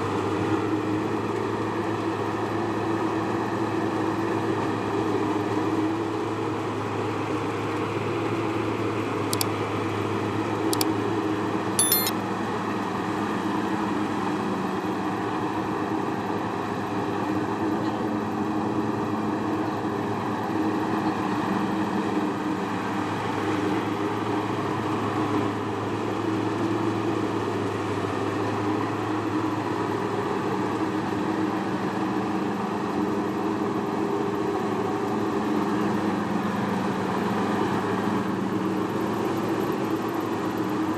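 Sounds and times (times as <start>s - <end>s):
short sharp clicks: 11.8s - 12.1s.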